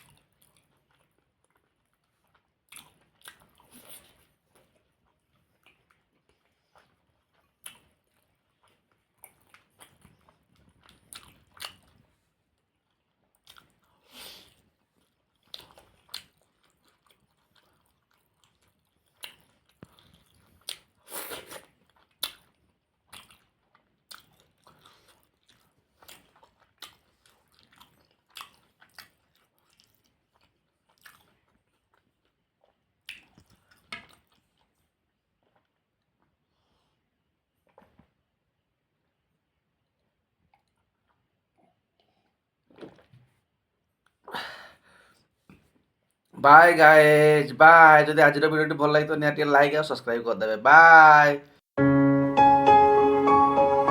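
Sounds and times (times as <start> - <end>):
close chewing mouth sounds: 0.0 - 38.2, 39.8 - 44.3.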